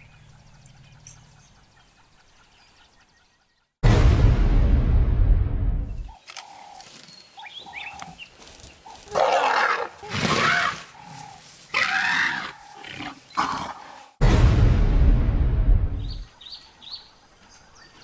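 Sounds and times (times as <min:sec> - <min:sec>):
loud low rumbling: 0:03.8 - 0:06.1, 0:14.2 - 0:16.3
baby elephant screaming: 0:09.1 - 0:11.0, 0:11.7 - 0:13.6.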